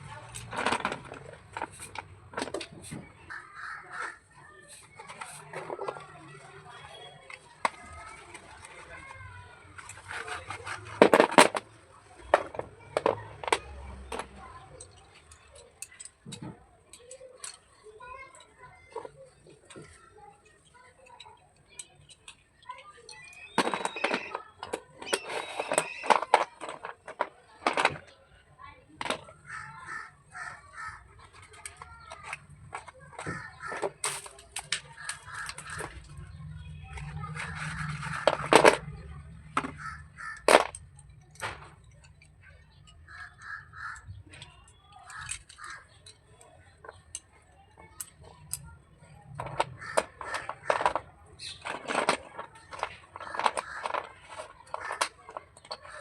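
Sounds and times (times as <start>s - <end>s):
slate pencils clicking and crackling: 0.0s - 56.0s
crows cawing: 3.3s - 4.4s, 29.4s - 31.2s, 33.3s - 34.0s, 35.0s - 35.8s, 39.7s - 40.6s, 43.0s - 44.2s, 45.1s - 46.1s, 49.8s - 50.9s, 53.2s - 54.2s, 54.8s - 55.1s, 55.7s - 56.0s.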